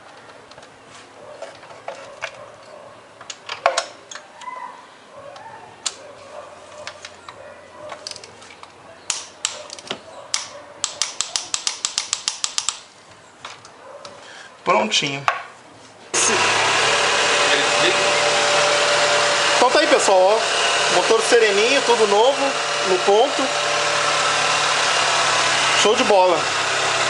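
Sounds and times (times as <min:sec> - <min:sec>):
hand tools clicking and knocking: 0:01.4 - 0:04.3, 0:06.8 - 0:12.9
ratchet rapid clicks: 0:10.9 - 0:12.8.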